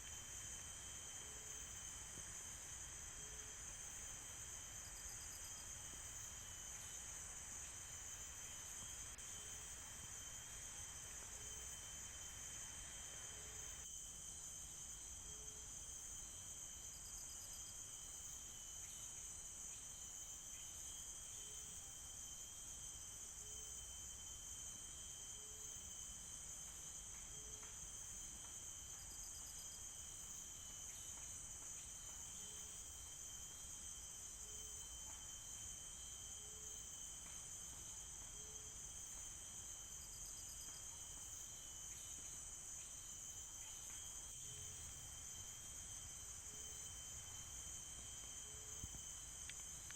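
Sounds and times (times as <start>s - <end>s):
short low insect calls: 0.0s - 15.0s
thin steady whine: 0.0s - 17.0s
crickets buzzing: 0.0s - 49.9s
faint hiss: 0.0s - 49.9s.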